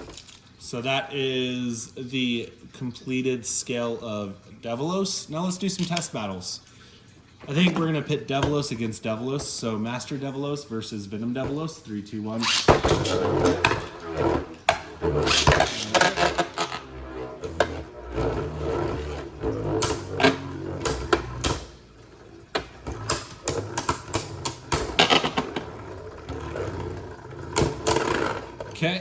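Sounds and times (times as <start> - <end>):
spinning tops whirring: 12.3 - 28.8
tops clacking together: 12.4 - 21.8, 22.5 - 28.8.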